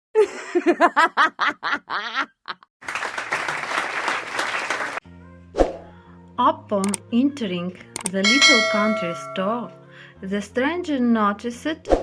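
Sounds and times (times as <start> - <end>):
applause: 2.8 - 5.0.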